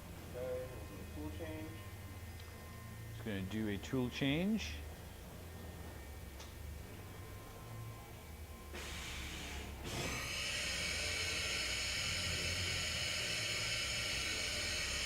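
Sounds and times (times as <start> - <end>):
machine low hum: 0.0 - 15.0
compressed air hiss: 8.7 - 11.8.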